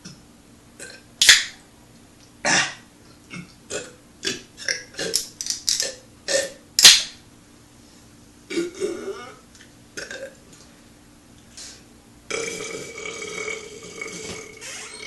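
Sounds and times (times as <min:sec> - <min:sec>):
man burping: 0:08.5 - 0:09.4, 0:10.0 - 0:10.4, 0:12.3 - 0:14.7.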